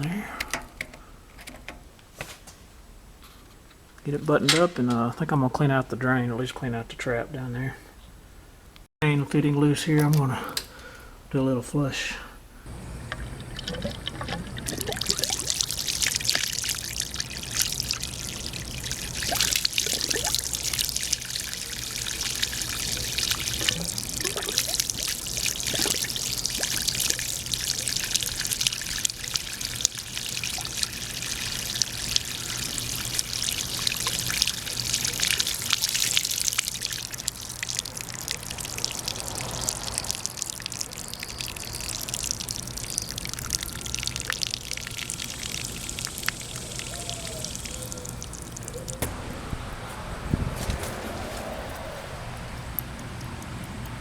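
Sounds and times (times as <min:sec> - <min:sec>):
water splashing and trickling: 0:12.7 - 0:54.0.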